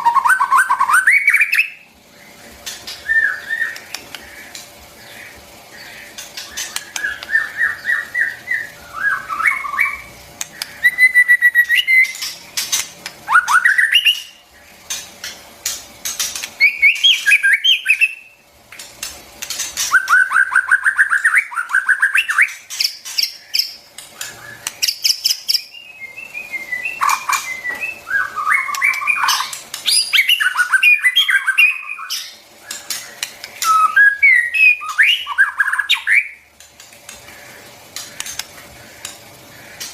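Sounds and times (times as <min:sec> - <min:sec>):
bird singing whistles and clicks: 0:02.9 - 0:04.3, 0:06.4 - 0:14.4, 0:16.4 - 0:18.2, 0:19.4 - 0:36.4.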